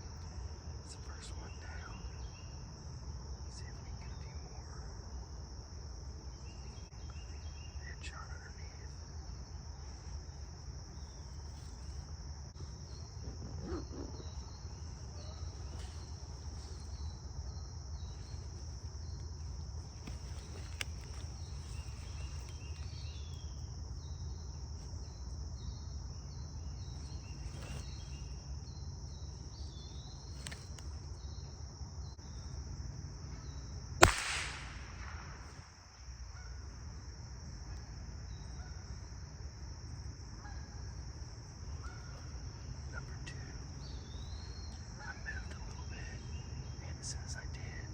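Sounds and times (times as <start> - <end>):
high-pitched insect chorus: 0.0 - 47.9
loud gunshot: 34.0 - 35.7
bird chirps: 41.7 - 47.9.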